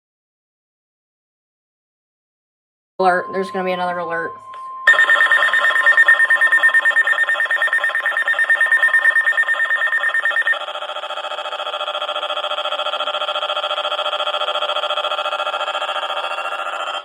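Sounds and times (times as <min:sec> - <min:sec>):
pulsing electronic alert tone: 0:04.9 - 0:10.6.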